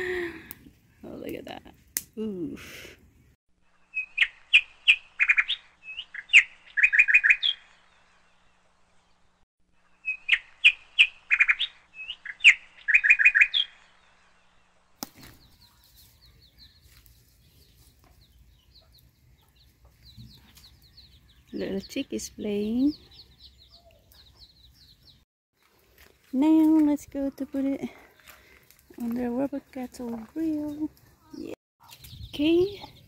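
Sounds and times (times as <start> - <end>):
songbird whistling and trilling: 3.9 - 7.8, 10.0 - 14.0.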